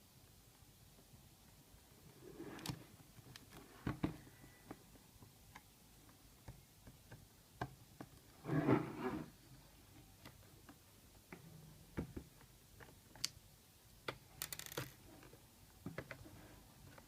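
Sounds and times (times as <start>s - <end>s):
plastic and metal parts clicking: 14.1s - 15.0s.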